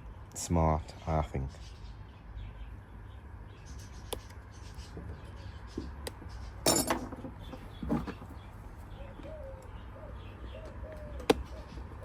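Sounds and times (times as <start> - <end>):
low steady hum: 0.0 - 12.0
metal tools clinking: 6.6 - 7.2.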